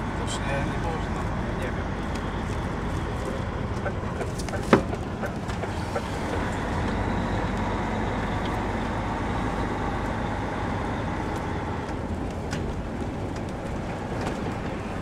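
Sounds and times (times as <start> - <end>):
truck diesel engine running: 0.0 - 15.0.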